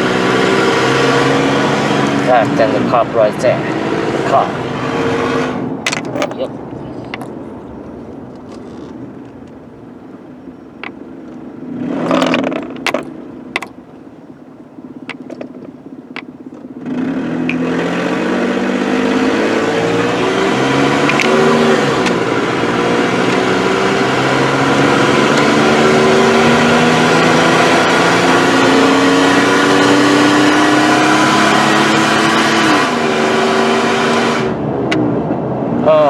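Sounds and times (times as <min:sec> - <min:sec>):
truck engine accelerating hard: 0:00.0 - 0:05.8, 0:16.8 - 0:36.0.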